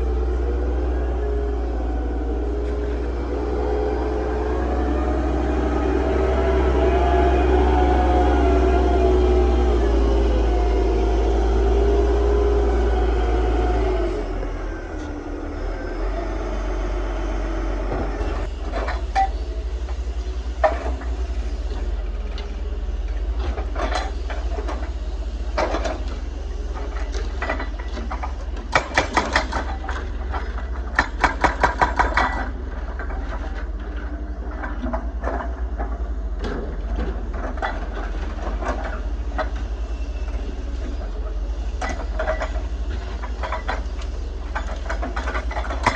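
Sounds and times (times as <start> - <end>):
diesel engine running: 0.0 - 45.9
clanks and knocks of excavator: 17.8 - 45.9.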